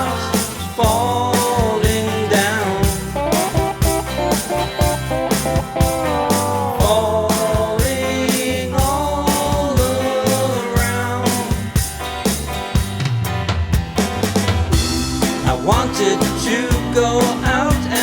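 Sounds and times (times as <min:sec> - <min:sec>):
bass: 0:00.0 - 0:18.0
drums keeping a steady beat: 0:00.0 - 0:18.0
guitar: 0:00.0 - 0:18.0
bending melodic lead line: 0:01.9 - 0:07.3, 0:14.2 - 0:18.0.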